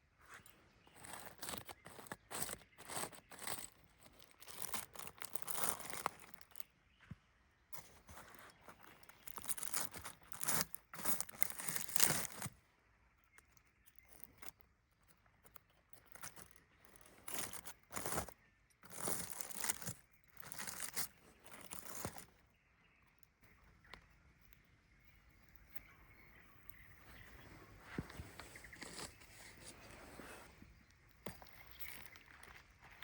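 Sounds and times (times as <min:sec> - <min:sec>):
paper crinkling and tearing: 0:01.0 - 0:06.6, 0:08.8 - 0:12.5, 0:17.3 - 0:22.2.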